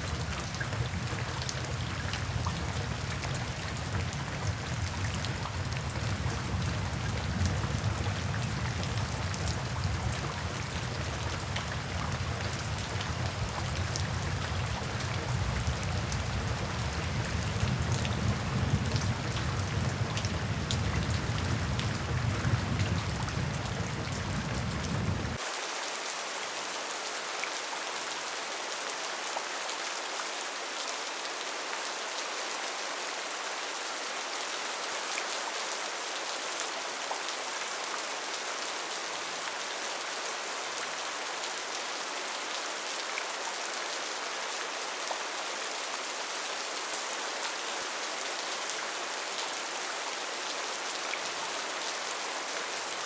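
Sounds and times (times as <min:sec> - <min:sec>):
rain on a tin roof: 0:00.0 - 0:53.0
low rumble: 0:16.8 - 0:25.4.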